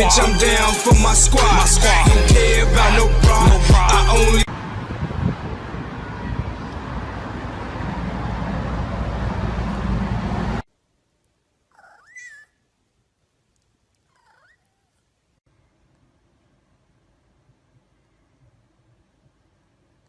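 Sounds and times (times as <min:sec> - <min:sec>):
dense noise with heavy bass: 0:00.0 - 0:07.1
cat meowing: 0:14.1 - 0:14.9.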